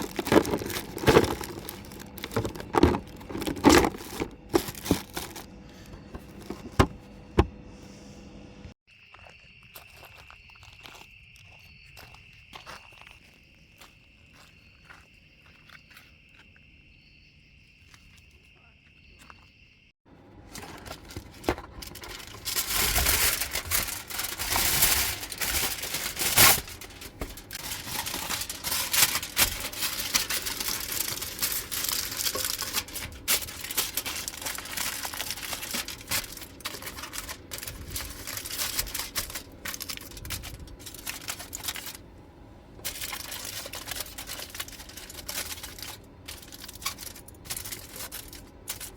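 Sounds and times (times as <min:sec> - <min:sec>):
plastic packaging crinkling and tearing: 0:00.0 - 0:06.9, 0:20.4 - 0:42.0, 0:42.8 - 0:48.9
high insect trill: 0:08.9 - 0:20.0, 0:20.8 - 0:42.0.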